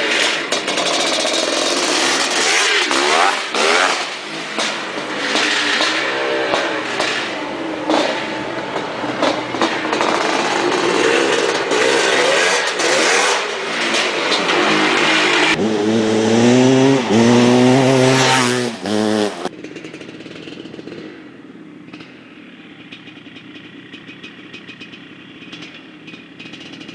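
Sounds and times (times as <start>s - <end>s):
dirt bike engine revving: 0.0s - 26.9s
motorbike engine idling: 16.4s - 26.9s.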